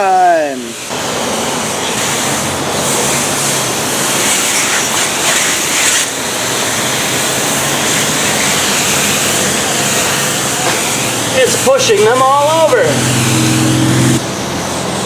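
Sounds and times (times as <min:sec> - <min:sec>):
water spraying onto toy trucks: 0:00.3 - 0:15.0.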